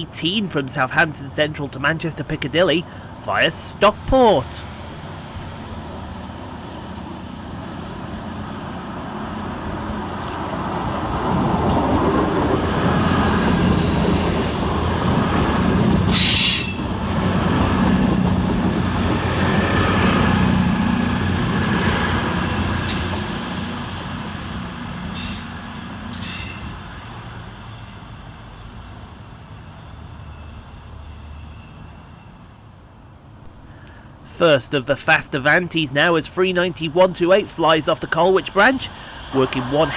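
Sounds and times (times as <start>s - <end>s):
train rumbling past: 2.8s - 34.3s
high wheel squeals: 4.3s - 14.8s, 15.8s - 21.2s.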